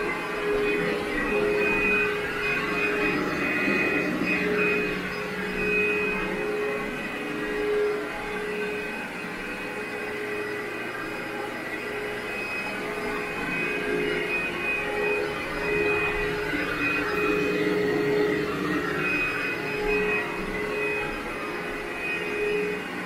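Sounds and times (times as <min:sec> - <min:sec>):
vacuum cleaner running: 0:00.0 - 0:23.0.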